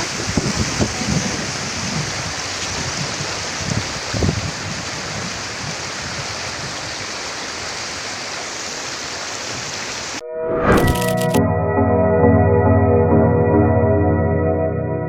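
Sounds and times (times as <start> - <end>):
rushing water: 0.0 - 10.2.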